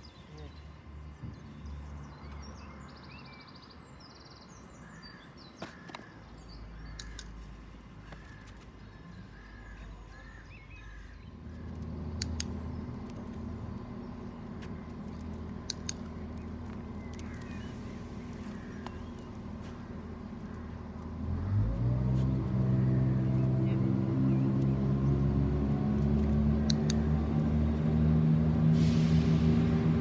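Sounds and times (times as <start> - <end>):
sharp clicks: 6.9 - 7.4, 11.6 - 13.8, 14.7 - 17.6, 26.0 - 27.3
bird calling: 8.0 - 20.9
steady low rumble: 9.2 - 30.0.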